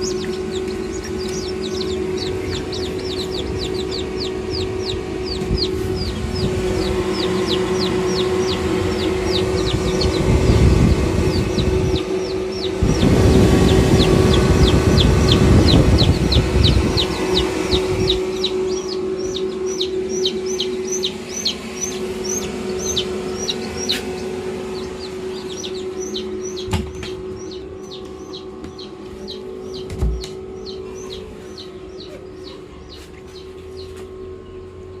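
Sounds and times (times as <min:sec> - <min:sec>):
rumble: 0:00.0 - 0:26.6
chicks peeping: 0:00.0 - 0:35.0
steady low hum: 0:00.0 - 0:35.0.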